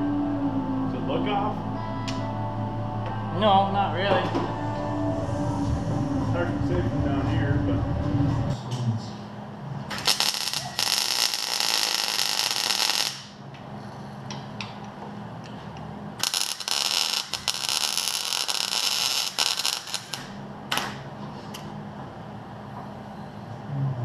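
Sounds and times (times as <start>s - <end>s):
welding arc crackling: 9.9s - 13.4s, 16.2s - 21.0s.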